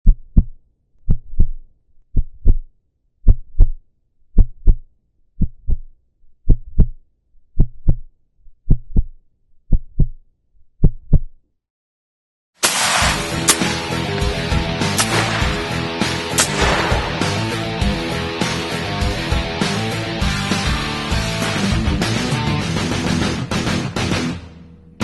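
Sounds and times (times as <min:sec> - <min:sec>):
heartbeat low thumps: 0:00.0 - 0:03.8, 0:04.4 - 0:04.8, 0:05.4 - 0:07.0, 0:07.6 - 0:08.1, 0:08.7 - 0:09.1, 0:09.7 - 0:10.2.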